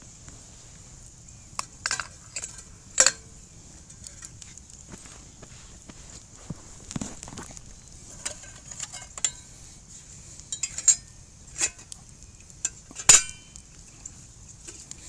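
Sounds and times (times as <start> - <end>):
metal cookware clinking: 10.5 - 11.9, 12.7 - 13.6.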